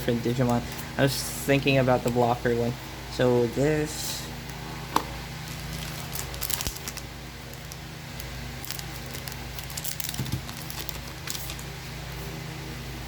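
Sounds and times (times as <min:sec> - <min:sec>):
cards crinkling and ticking: 0:05.4 - 0:11.8.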